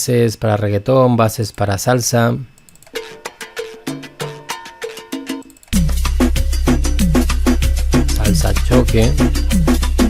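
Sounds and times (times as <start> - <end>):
fast latin percussion: 2.8 - 10.0
deep bass: 5.8 - 10.0.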